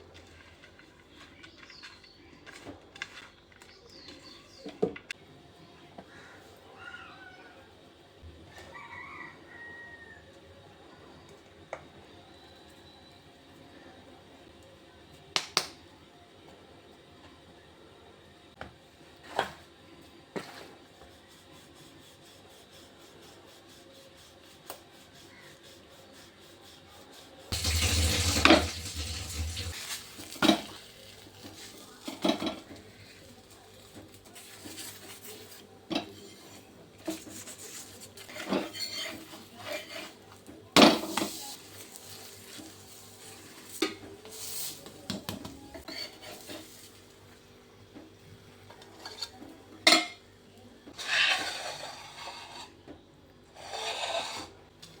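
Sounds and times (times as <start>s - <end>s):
utensil clatter: 27.5s - 30.8s.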